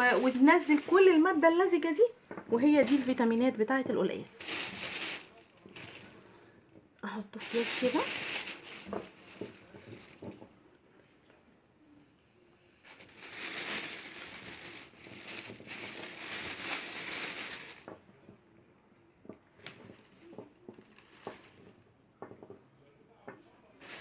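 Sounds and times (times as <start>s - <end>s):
plastic bag crinkling: 0.0s - 3.6s, 4.2s - 6.3s, 7.4s - 10.6s, 12.8s - 18.0s, 19.6s - 21.8s.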